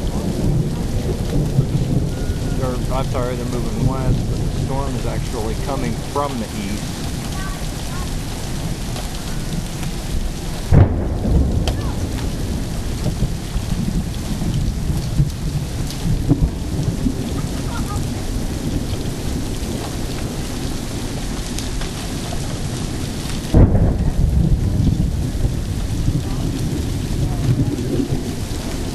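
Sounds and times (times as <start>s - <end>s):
loud low bursts: 0.0s - 8.8s, 10.2s - 20.4s
rumbling thunder: 0.0s - 28.9s
steady rain: 0.0s - 28.9s.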